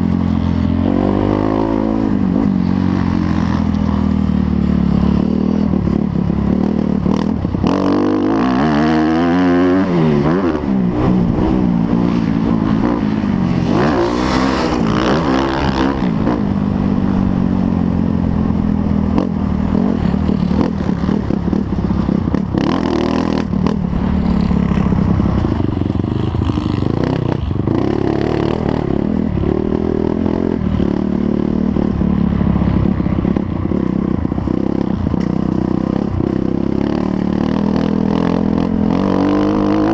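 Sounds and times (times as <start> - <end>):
motocross engines revving: 7.1 - 16.4.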